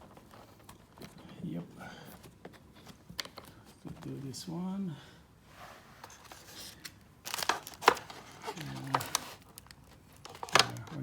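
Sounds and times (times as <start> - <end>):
plastic speaker rustling: 6.0 - 11.0
plastic bracket clicking: 7.3 - 11.0.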